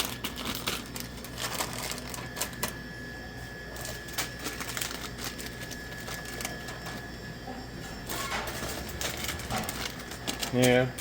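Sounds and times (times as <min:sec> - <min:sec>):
faint hum: 0:00.0 - 0:11.0.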